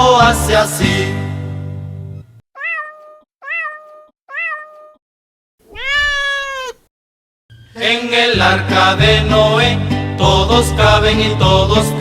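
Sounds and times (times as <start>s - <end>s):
cat meowing: 2.6s - 5.0s, 5.6s - 6.9s.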